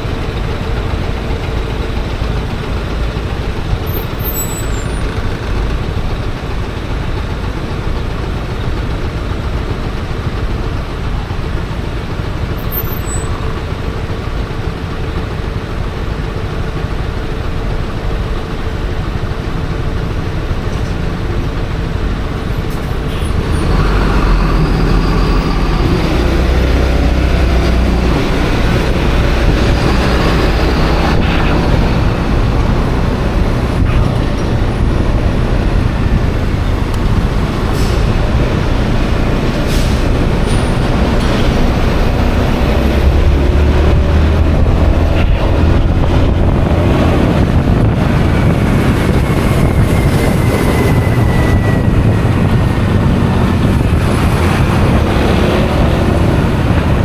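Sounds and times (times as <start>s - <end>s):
rumble of engines and vehicles: 0.0s - 57.0s
wind rushing: 23.3s - 57.0s.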